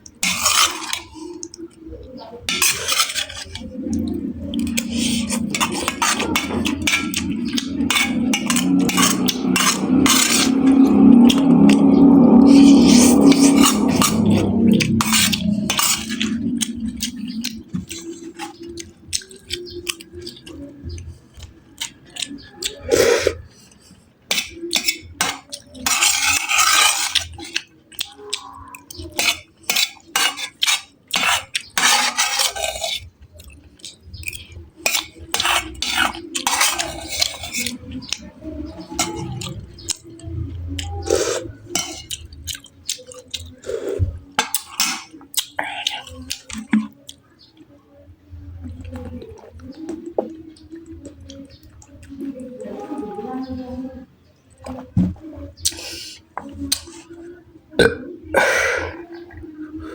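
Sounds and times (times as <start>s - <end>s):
cutlery clinking on a plate: 4.7s - 10.6s, 24.3s - 27.7s, 29.0s - 33.1s.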